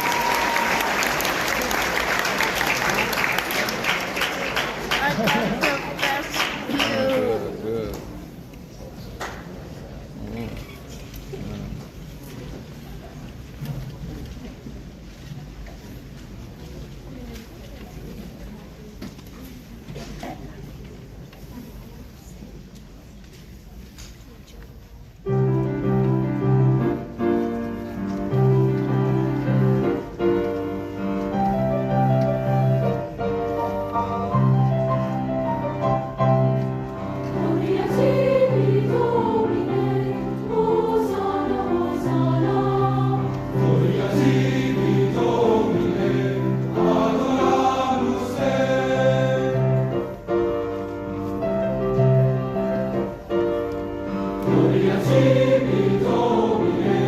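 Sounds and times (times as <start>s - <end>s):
piano chords: 25.3s - 57.0s
choir singing: 36.0s - 50.3s, 54.1s - 57.0s.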